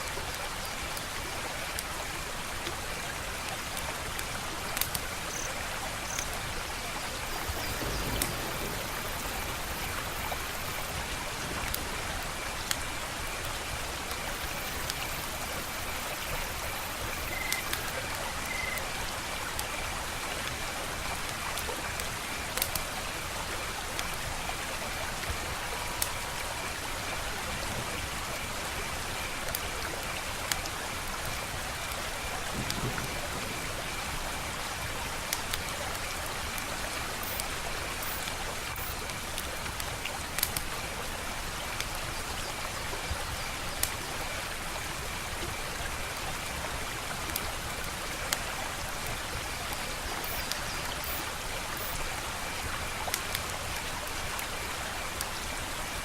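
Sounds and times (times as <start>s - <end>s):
wood fire crackling: 3.5s - 5.3s.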